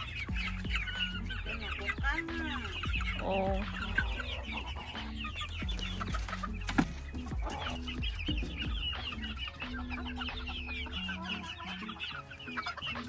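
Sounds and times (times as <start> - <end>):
chicks cheeping and clucking: 0.0 - 13.0.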